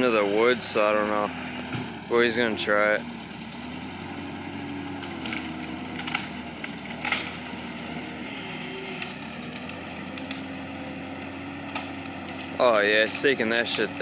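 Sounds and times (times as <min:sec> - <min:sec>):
skid steer engine running: 0:00.0 - 0:14.0
wood cracking and snapping: 0:04.9 - 0:14.0.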